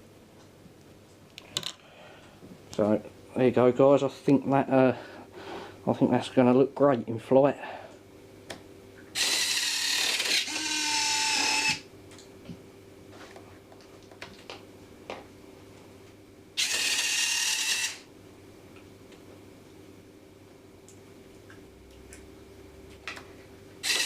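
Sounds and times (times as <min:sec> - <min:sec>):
electric landing gear whirring: 0:09.2 - 0:11.8, 0:16.6 - 0:18.0.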